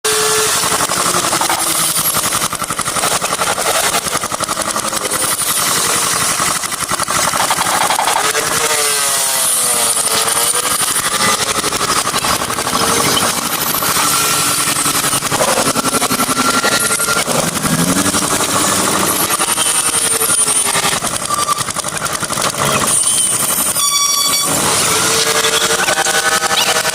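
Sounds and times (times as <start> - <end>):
motor running with rapid pulsing: 0.1 - 26.9
pitched sound dipping and rising: 0.6 - 5.0, 7.2 - 8.8.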